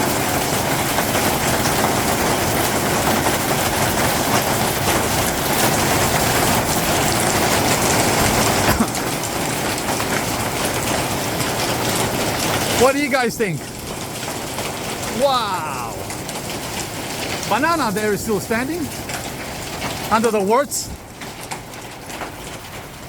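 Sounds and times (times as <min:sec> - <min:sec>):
storm wind with rain: 0:00.0 - 0:23.0.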